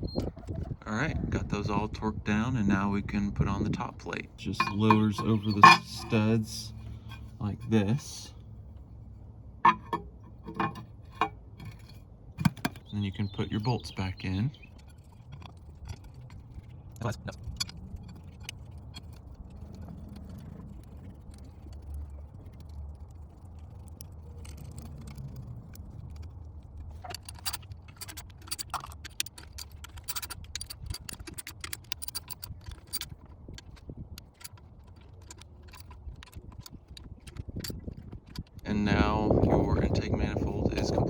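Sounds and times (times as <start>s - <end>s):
metal bolts clinking: 4.4s - 8.3s, 9.6s - 19.2s, 26.9s - 38.6s
socket wrench clicking: 9.7s - 12.9s.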